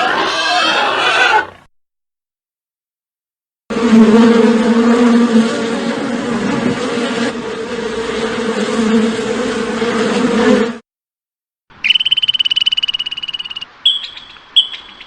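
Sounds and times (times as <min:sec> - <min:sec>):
insects buzzing: 0:03.7 - 0:10.8, 0:11.8 - 0:15.0.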